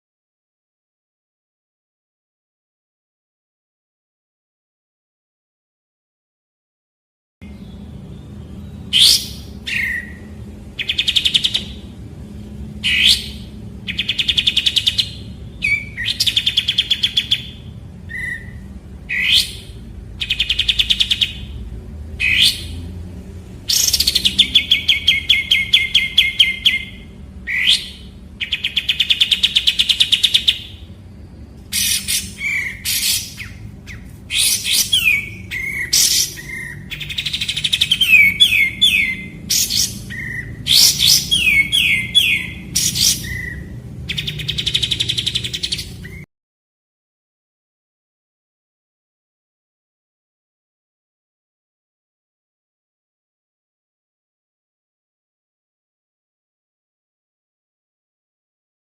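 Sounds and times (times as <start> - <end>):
songbird whistles and trills: 7.4 - 11.9, 12.8 - 21.6, 23.7 - 30.9, 31.7 - 46.3.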